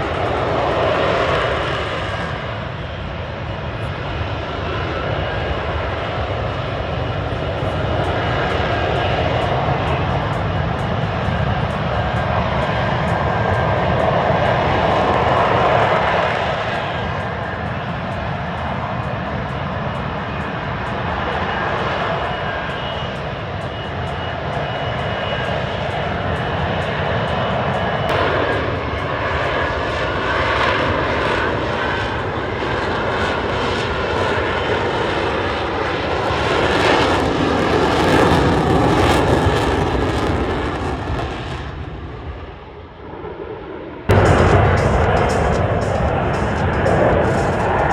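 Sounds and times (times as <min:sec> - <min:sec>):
jet engine roaring: 0:00.0 - 0:47.9
thin high whine: 0:44.1 - 0:47.9.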